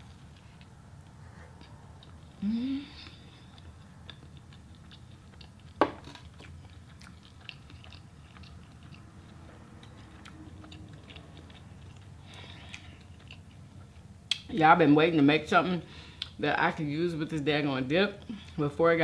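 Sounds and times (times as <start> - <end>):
chewing and crunching food: 0.0 - 14.5
low steady hum: 0.0 - 19.0.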